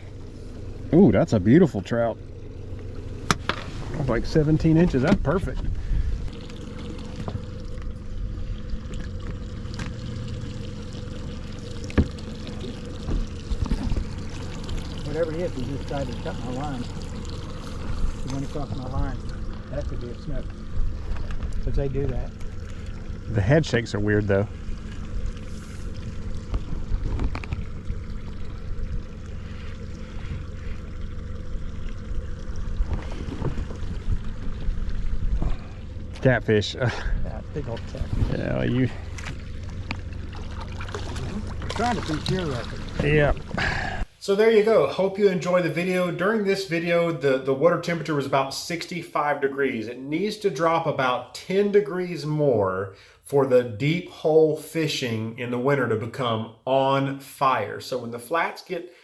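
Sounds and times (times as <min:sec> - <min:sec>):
low motor hum: 0:00.0 - 0:44.2
water trickling and splashing: 0:00.0 - 0:48.4.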